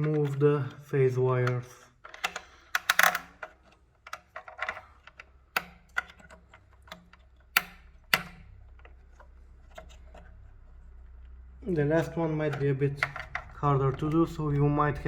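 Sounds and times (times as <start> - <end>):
metallic clicks of bolts: 0.0 - 10.0.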